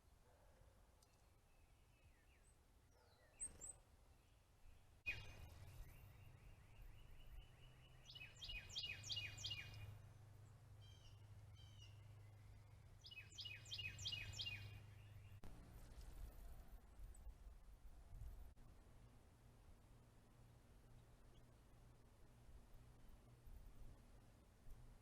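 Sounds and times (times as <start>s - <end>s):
songbird singing: 1.0s - 15.4s
low steady hum: 3.9s - 25.0s.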